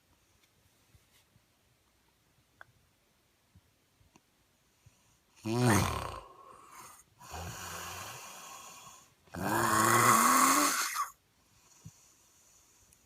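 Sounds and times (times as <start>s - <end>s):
man snoring heavily: 5.4s - 11.1s.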